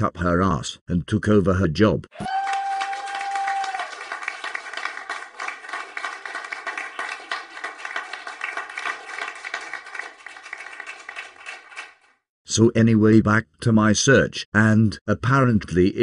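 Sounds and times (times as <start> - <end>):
audience applause: 2.2 - 12.1.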